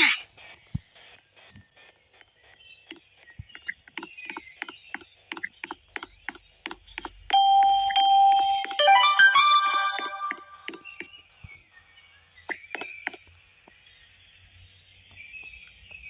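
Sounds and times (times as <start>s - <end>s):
quick steady clicks: 0.3s - 8.0s, 9.7s - 11.2s
high electronic beep: 7.3s - 11.0s.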